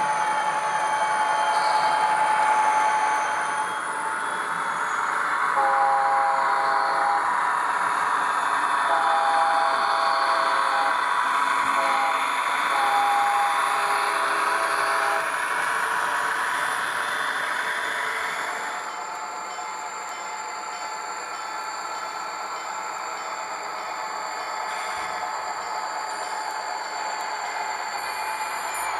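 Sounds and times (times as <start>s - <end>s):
model locomotive engine sound: 0.0s - 28.9s
locomotive horn chords: 5.6s - 7.3s, 8.9s - 10.9s, 11.7s - 15.2s.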